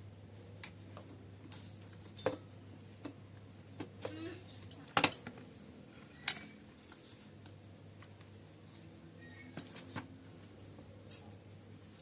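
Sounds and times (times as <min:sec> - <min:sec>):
metallic clinks and knocks: 0:01.5 - 0:02.5.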